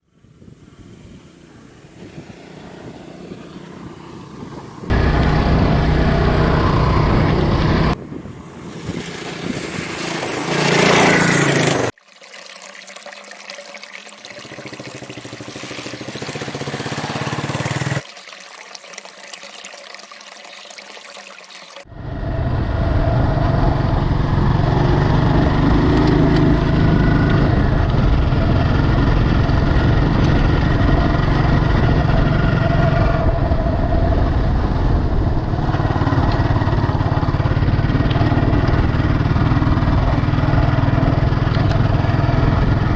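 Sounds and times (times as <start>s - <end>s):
motorcycle engine running: 3.2s - 8.0s, 14.7s - 18.0s, 22.0s - 42.9s.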